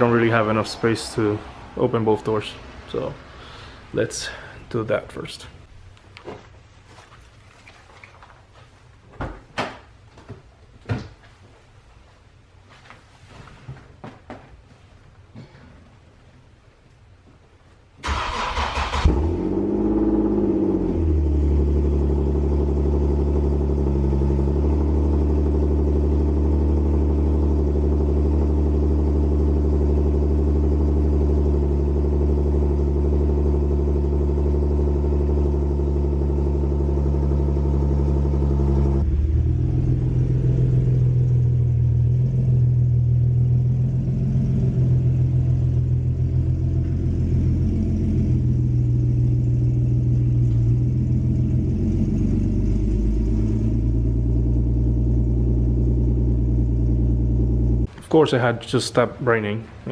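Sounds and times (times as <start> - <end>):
car driving off slowly: 18.0 - 57.9
car engine idling: 18.0 - 57.9.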